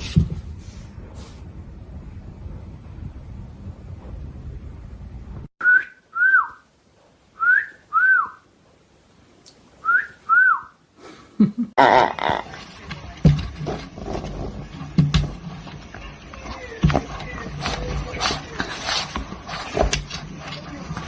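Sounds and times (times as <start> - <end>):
two-note wolf whistle: 7.4 - 8.4, 9.8 - 10.7.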